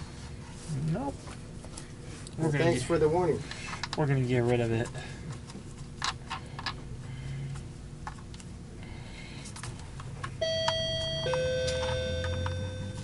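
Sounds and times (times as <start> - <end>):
electronic two-note door chime: 10.4 - 13.0.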